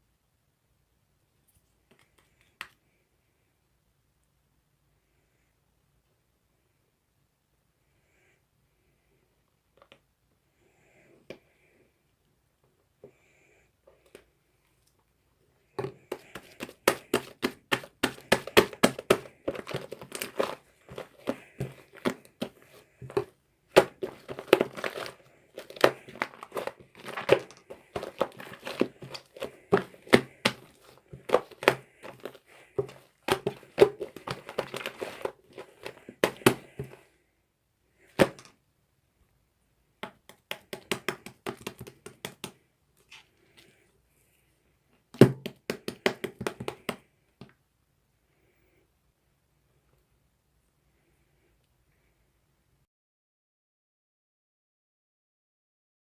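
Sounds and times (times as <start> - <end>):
slime popping and crackling: 16.1 - 37.0.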